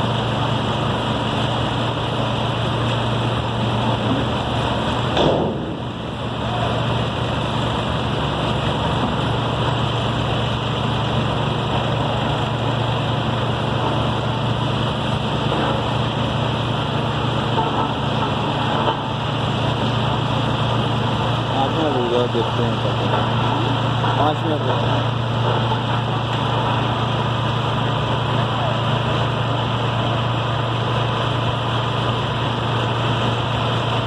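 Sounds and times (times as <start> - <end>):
heavy construction machinery engine: 0.0 - 34.0.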